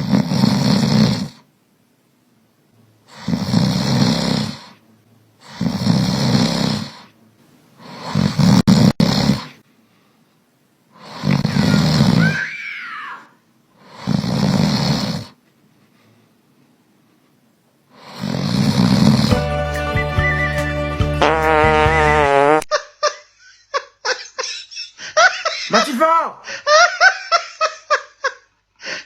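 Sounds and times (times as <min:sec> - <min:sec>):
loud snoring: 0:00.0 - 0:01.4, 0:03.1 - 0:04.8, 0:05.4 - 0:07.1, 0:07.8 - 0:09.6, 0:11.0 - 0:12.5, 0:13.8 - 0:15.4, 0:18.0 - 0:19.4, 0:21.2 - 0:22.6.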